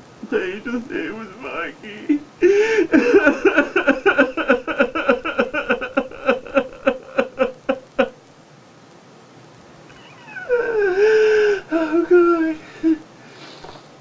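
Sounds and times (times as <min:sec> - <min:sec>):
man sobbing in breathy gasps: 0:00.3 - 0:08.2, 0:10.4 - 0:13.1.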